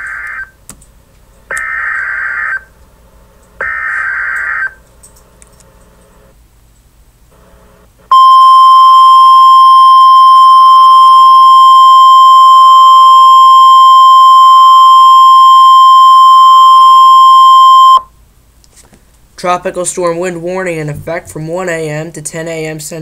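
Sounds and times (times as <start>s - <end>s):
alarm tone: 8.1s - 18.0s.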